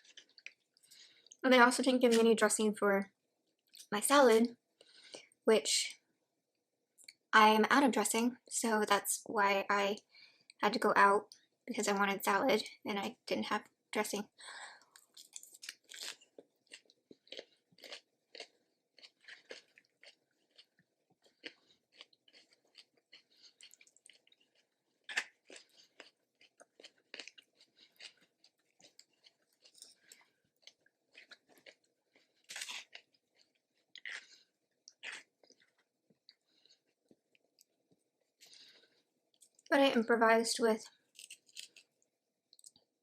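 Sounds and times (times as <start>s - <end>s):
person chewing and crunching food: 0.0s - 1.4s, 14.5s - 39.7s, 40.8s - 43.0s.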